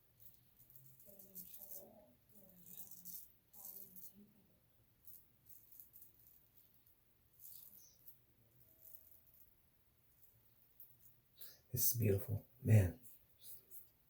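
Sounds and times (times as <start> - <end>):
razor scraping stubble: 0.0 - 4.3, 5.0 - 11.2
faint low voice: 11.8 - 13.6.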